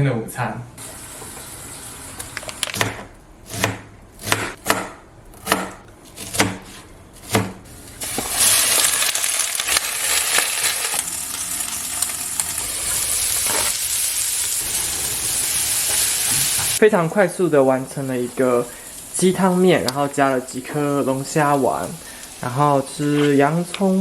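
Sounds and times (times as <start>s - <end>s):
food sizzling in a frying pan: 7.7s - 24.0s.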